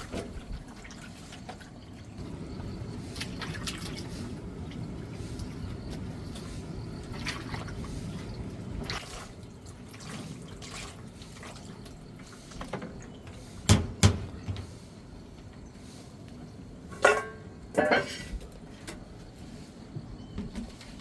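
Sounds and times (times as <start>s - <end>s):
water dripping and trickling: 0.0s - 13.4s
sharp knocks: 13.7s - 14.7s.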